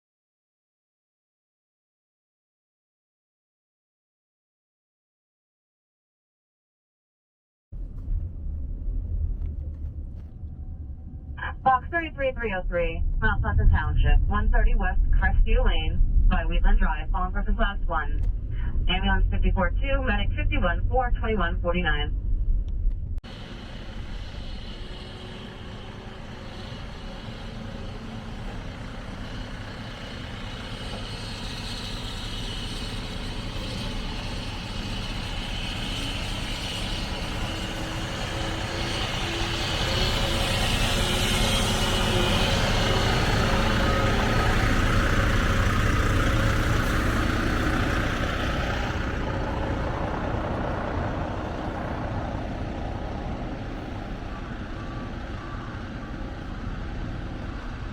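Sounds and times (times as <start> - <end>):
road noise: 7.8 - 57.9
heavy truck engine: 23.2 - 57.9.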